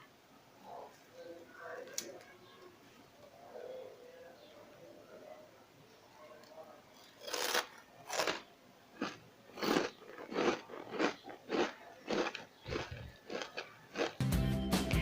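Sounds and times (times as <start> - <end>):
crunchy food being chewed: 6.9 - 14.2.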